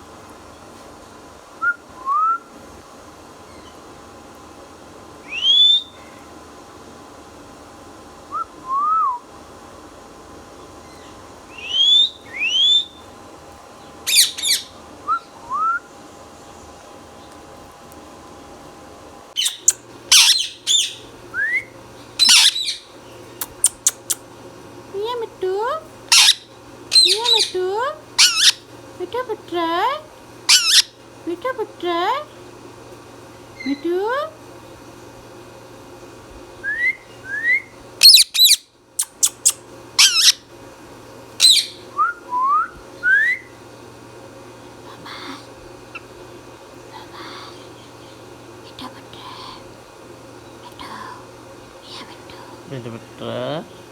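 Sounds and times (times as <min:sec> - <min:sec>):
parakeet squawking: 0:11.5 - 0:13.0, 0:14.1 - 0:14.8, 0:19.4 - 0:21.1, 0:22.2 - 0:24.2, 0:26.1 - 0:28.7, 0:30.5 - 0:31.0, 0:38.0 - 0:40.5, 0:41.4 - 0:41.9
sharp bird chirps: 0:19.4 - 0:21.0, 0:38.0 - 0:40.4
sharp clicks: 0:23.4 - 0:24.2.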